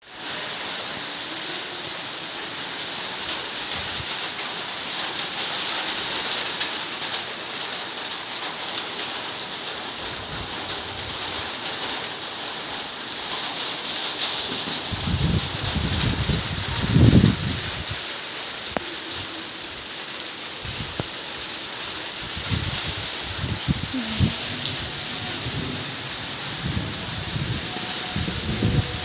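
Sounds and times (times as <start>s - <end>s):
rain hissing: 0.0s - 29.0s
raindrop ticks: 20.6s - 21.2s.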